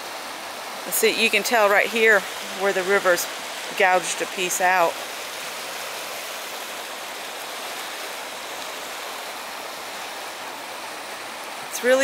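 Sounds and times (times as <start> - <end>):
river rushing: 0.0 - 12.0.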